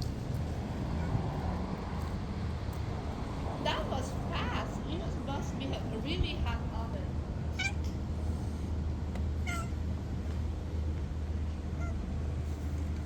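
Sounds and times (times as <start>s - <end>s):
cat meowing: 7.5s - 8.0s, 9.4s - 9.8s, 11.7s - 12.0s.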